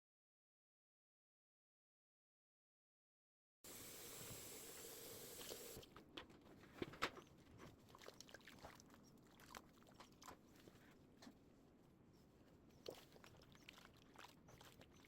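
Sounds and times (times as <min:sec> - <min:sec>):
faint clicks and taps: 0:10.0 - 0:11.4.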